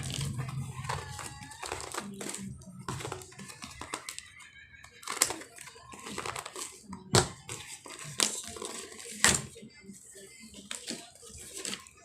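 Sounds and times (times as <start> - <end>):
packaging crinkling and rustling: 0.0 - 4.3, 10.6 - 12.0.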